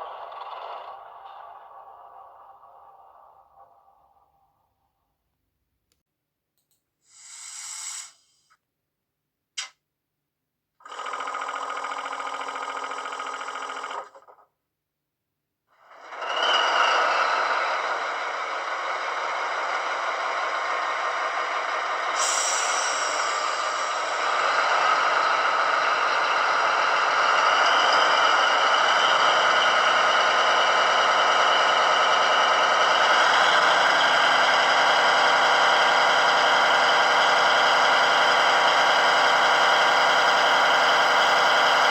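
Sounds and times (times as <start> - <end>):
click: 6.6 - 6.9, 9.6 - 9.8
air hiss: 7.0 - 8.5, 22.2 - 23.8
diesel engine running: 15.9 - 41.9
steady whirring: 16.1 - 41.9.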